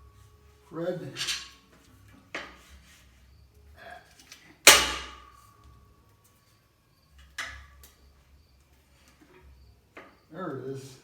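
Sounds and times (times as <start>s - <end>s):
loud metallic clang: 4.7s - 5.5s.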